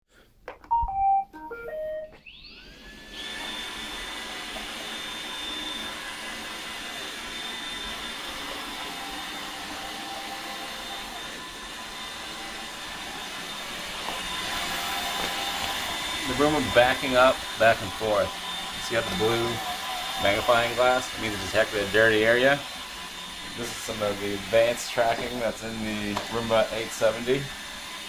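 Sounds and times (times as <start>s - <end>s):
robot vacuum start-up beeps: 0.7s - 2.8s
robot vacuum motor whir: 2.3s - 28.0s.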